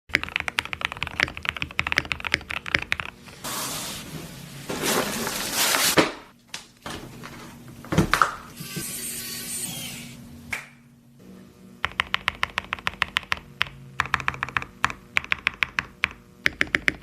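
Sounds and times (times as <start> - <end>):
fast typing on mechanical keyboard: 0.1 - 3.2, 11.8 - 17.0.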